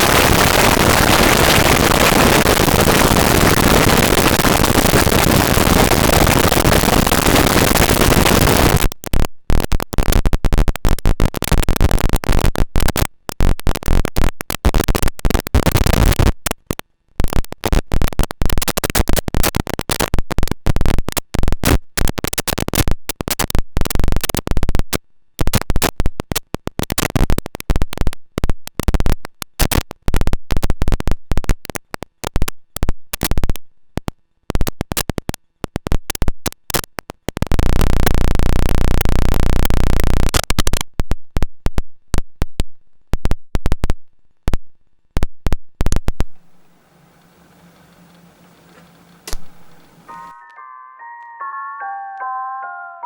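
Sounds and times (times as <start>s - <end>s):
stuttering noisy synth: 0.0s - 8.9s.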